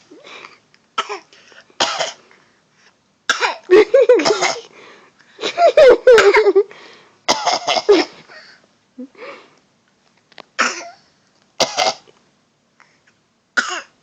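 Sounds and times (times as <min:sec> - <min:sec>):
person fake coughing: 0:03.3 - 0:04.7.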